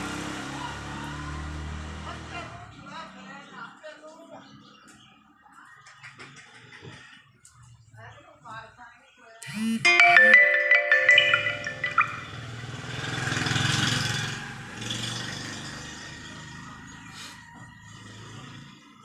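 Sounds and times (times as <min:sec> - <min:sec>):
marimba-like melody: 0:09.5 - 0:12.6.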